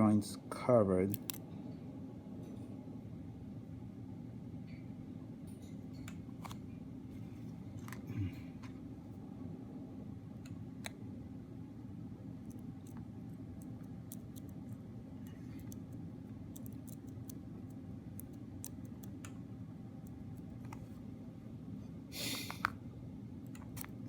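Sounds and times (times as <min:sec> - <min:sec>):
steady low hum: 0:00.0 - 0:24.0
small parts clicking on table: 0:01.1 - 0:01.4.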